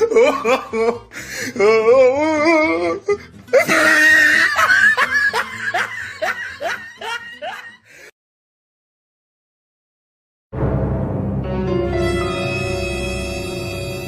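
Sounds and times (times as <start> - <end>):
laughter: 0.0 - 1.1, 3.5 - 7.9.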